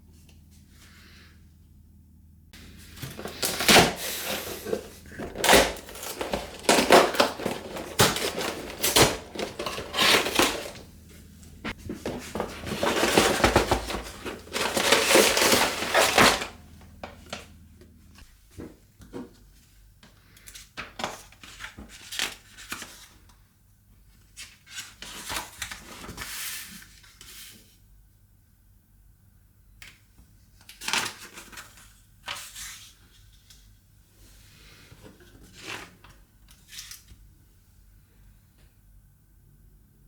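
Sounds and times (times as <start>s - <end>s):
plastic bricks rustling and clattering: 2.9s - 10.9s, 11.7s - 17.2s.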